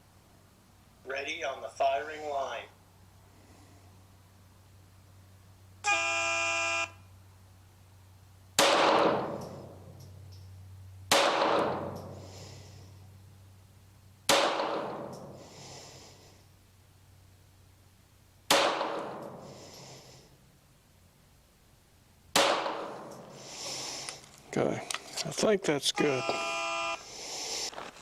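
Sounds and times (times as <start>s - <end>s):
pistol shots with ringing echo: 8.6s - 9.9s, 11.1s - 12.2s, 14.3s - 15.4s, 18.5s - 19.5s, 22.3s - 23.3s.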